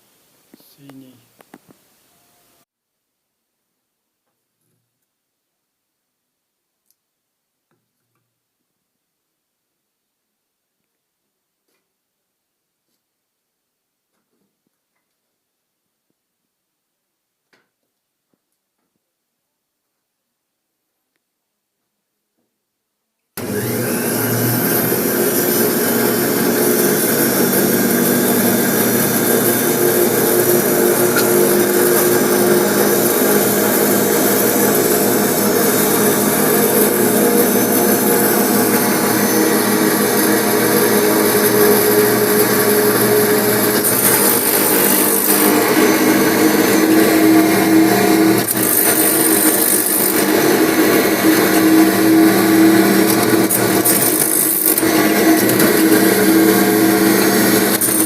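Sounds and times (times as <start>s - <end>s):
milling machine motor whining: 23.4s - 58.0s.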